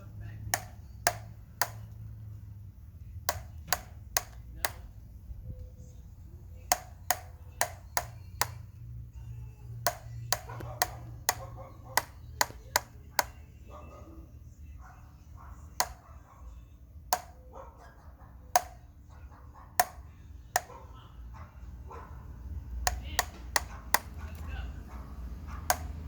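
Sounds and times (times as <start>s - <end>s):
wheel clicking: 0.5s - 2.0s, 3.3s - 4.9s, 6.6s - 8.7s, 9.8s - 13.4s.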